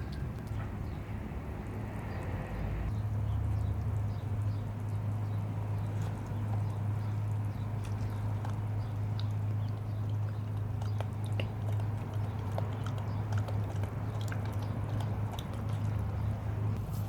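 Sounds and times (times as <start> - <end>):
steady low hum: 0.0 - 17.0
splashing water: 3.4 - 16.8.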